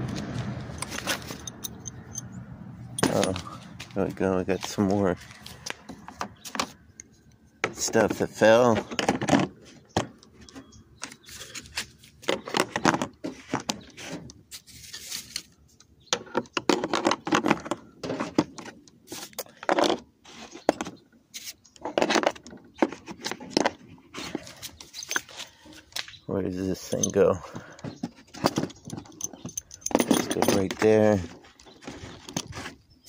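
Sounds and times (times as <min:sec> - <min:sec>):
metal tools clinking: 0:00.7 - 0:03.6, 0:24.4 - 0:25.6, 0:26.6 - 0:32.6.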